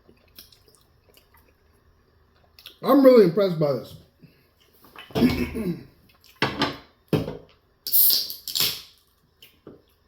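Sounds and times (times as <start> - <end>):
person chewing food: 0.0 - 2.8.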